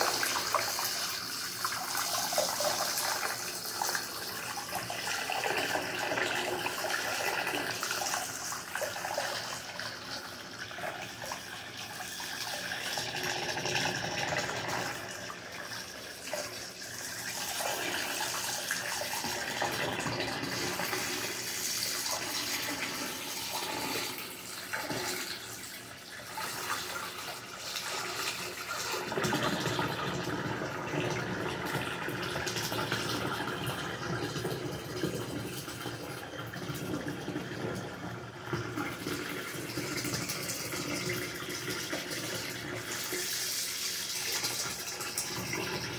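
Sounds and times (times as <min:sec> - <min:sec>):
running water splashing: 0:00.0 - 0:36.5.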